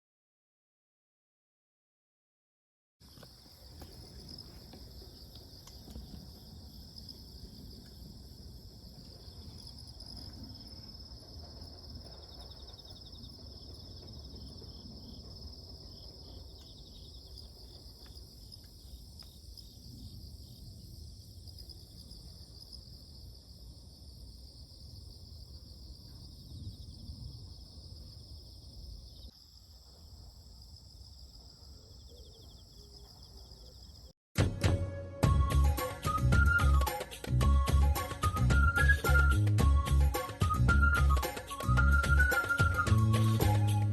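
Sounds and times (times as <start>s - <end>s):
crickets trilling: 3.0s - 34.1s
insects pulsed trills: 3.1s - 34.1s.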